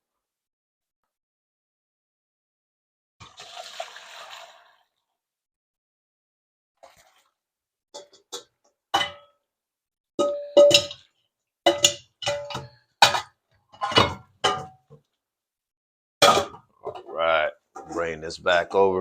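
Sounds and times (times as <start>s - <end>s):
metal pots clanking in sink: 8.0s - 9.4s, 10.2s - 15.0s, 16.2s - 18.2s.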